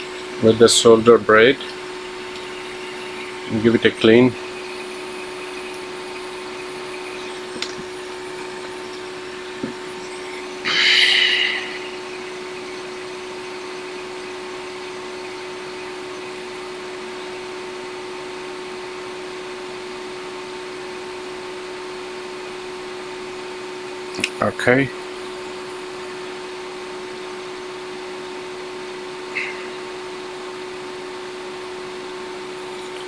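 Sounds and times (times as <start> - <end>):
loud hiss: 0.0 - 13.5
small fan motor humming: 0.0 - 33.0
faint clicks: 1.6 - 3.6, 4.4 - 12.8, 24.1 - 24.4.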